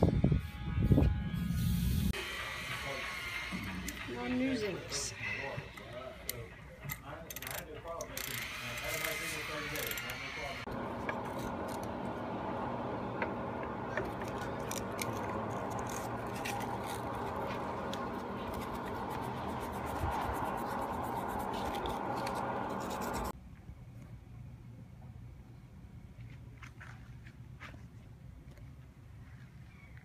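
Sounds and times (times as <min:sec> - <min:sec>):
machine hum: 0:08.2 - 0:23.4
scratching: 0:13.9 - 0:23.4.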